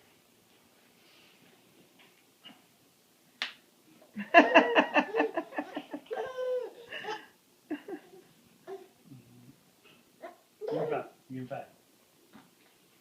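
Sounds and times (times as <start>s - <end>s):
child laughing: 4.4s - 8.9s.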